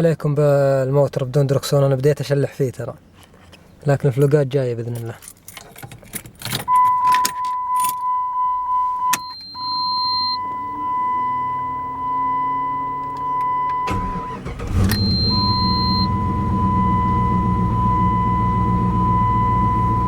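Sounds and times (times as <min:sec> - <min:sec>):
high warning tone: 0:06.7 - 0:20.0
car engine running: 0:10.4 - 0:20.0
starter cranking engine: 0:13.9 - 0:16.2.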